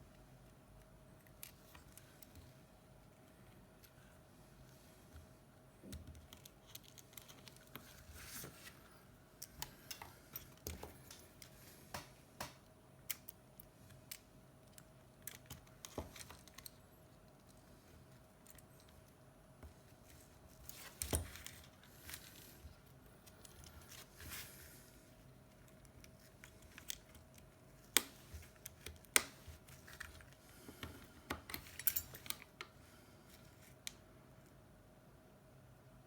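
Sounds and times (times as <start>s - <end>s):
faint steady hum: 0.0s - 36.0s.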